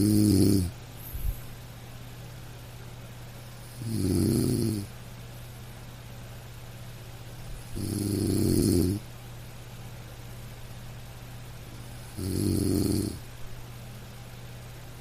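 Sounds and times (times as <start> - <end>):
person snoring: 0.0 - 0.7, 3.8 - 4.9, 7.6 - 9.0, 12.1 - 13.2
steady low hum: 0.0 - 15.0.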